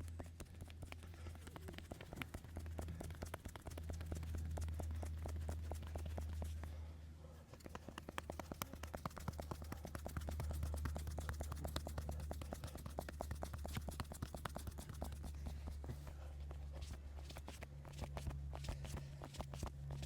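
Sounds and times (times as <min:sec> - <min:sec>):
hands slapping on body: 0:00.0 - 0:06.7, 0:07.5 - 0:16.1
low hum: 0:00.0 - 0:20.0.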